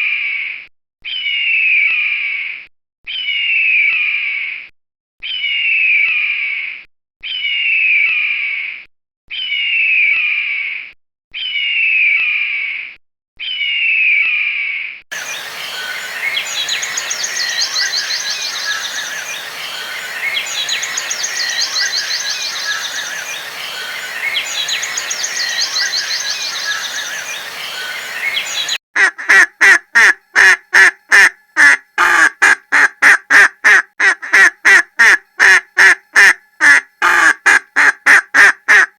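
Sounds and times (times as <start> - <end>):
high downward gliding call: 15.1 - 28.8
wild birds singing with trills: 15.1 - 28.8
ducks quacking: 15.1 - 38.9.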